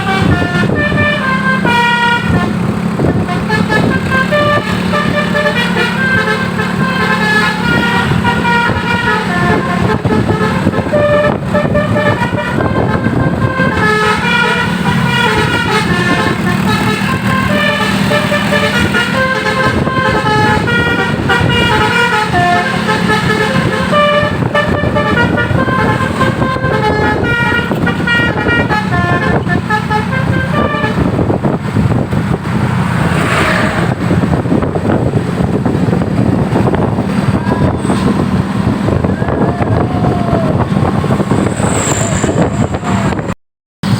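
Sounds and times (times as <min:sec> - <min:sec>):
multi-tone bus horn tune: 0:00.0 - 0:32.4
bus engine drone: 0:00.0 - 0:43.9.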